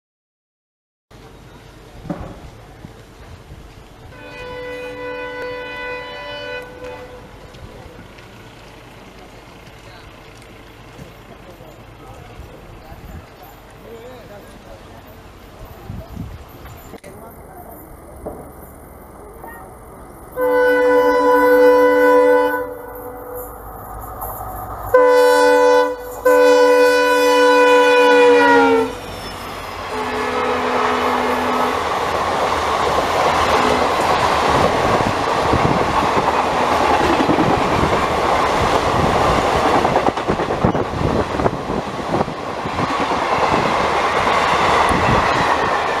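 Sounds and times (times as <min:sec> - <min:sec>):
train wheels clattering over rails: 0:01.2 - 0:04.0, 0:06.7 - 0:20.0, 0:29.0 - 0:46.0
locomotive horn blasts: 0:04.1 - 0:07.6, 0:20.3 - 0:23.5, 0:24.9 - 0:29.2, 0:29.9 - 0:31.9, 0:33.5 - 0:34.1.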